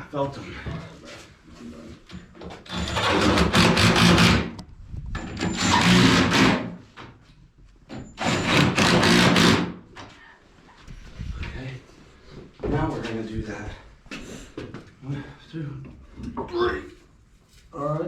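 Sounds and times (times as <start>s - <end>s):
power drill driving screws: 2.7s - 4.6s, 5.3s - 6.7s, 8.2s - 9.8s.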